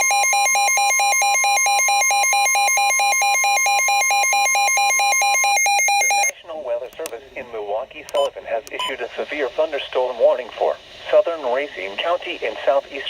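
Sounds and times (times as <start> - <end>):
fast alert beeping: 0.0 - 6.3
steady alarm tone: 0.0 - 6.3.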